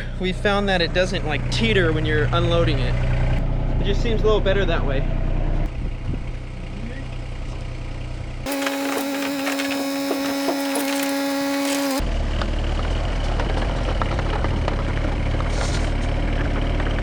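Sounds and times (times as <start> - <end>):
low engine rumble with crackling: 5.2 - 17.0
machinery whine with clicks: 8.5 - 12.0.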